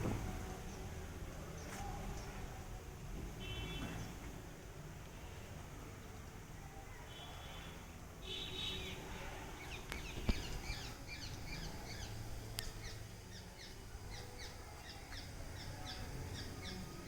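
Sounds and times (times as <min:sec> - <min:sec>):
small birds chirping: 0:09.6 - 0:17.0.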